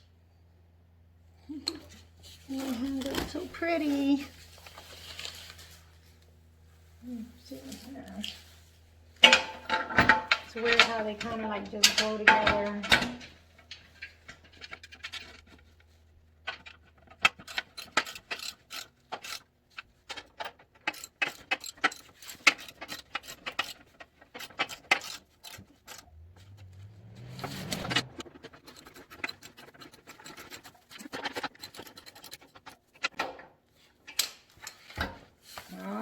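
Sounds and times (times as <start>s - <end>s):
metal clicks of hand tools: 16.5s - 26.6s, 34.0s - 35.1s
rising hum: 26.0s - 28.3s.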